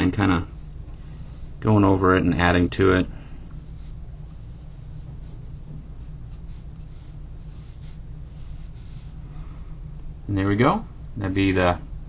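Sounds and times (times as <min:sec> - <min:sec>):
low steady hum: 0:00.0 - 0:12.0
marker scratching on paper: 0:03.6 - 0:09.2.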